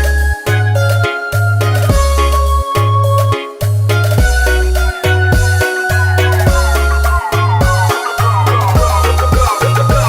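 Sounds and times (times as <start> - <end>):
gliding melody line: 1.7 - 10.0
deep bass notes: 1.8 - 10.0.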